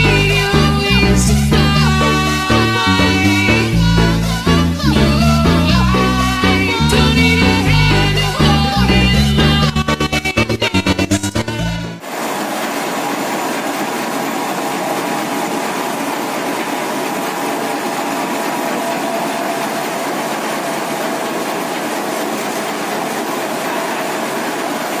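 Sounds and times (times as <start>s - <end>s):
corn sheller rattling clatter: 12.0s - 25.0s.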